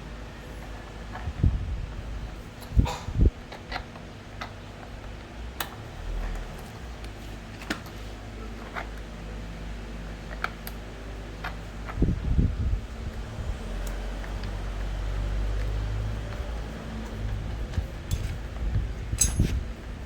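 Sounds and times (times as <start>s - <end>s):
tools clicking and knocking: 17.7s - 18.4s, 19.1s - 19.6s.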